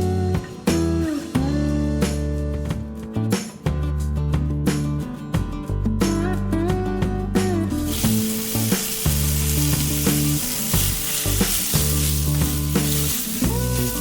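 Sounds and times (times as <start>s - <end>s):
background music: 0.0s - 14.0s
pork sizzling in a pan: 7.9s - 14.0s.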